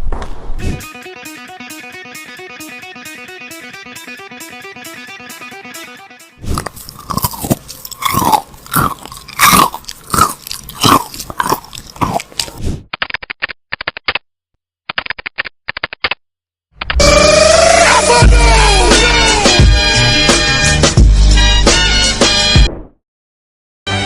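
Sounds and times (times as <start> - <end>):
guitar music: 0.8 - 6.4, 17.0 - 20.6
person chewing crunchy food: 6.4 - 12.6.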